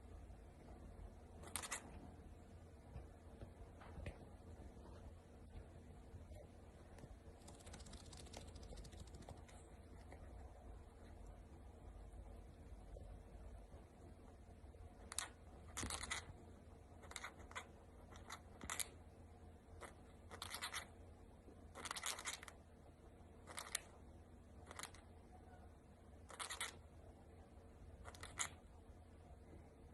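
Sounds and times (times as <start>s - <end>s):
cockatiel clicking: 1.4s - 1.8s, 7.4s - 10.2s, 15.0s - 16.3s, 17.0s - 19.0s, 19.8s - 20.9s, 21.7s - 22.6s, 23.4s - 24.0s, 24.6s - 25.1s, 26.3s - 26.8s, 28.0s - 28.6s.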